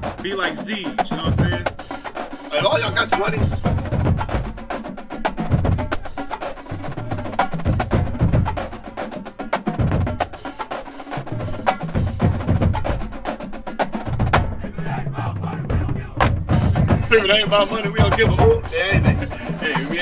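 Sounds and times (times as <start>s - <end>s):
snare and tenor drums: 0.0s - 20.0s
tuned bass drums: 1.1s - 1.9s, 2.6s - 4.7s, 6.8s - 8.7s, 15.6s - 20.0s.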